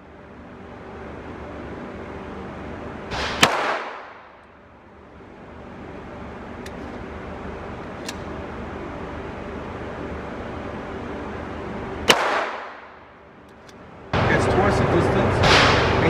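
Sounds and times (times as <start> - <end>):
steady background noise: 0.0 - 16.0
pistol shot: 3.1 - 4.4, 12.0 - 13.0.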